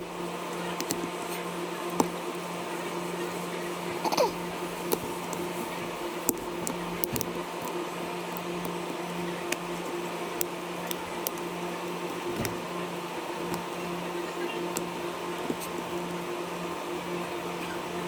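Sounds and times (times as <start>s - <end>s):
electrical fan hum: 0.0s - 18.0s.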